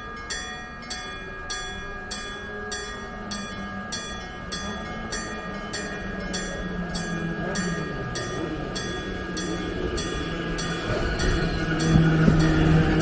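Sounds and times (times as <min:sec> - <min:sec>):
train rumbling: 0:06.5 - 0:13.0.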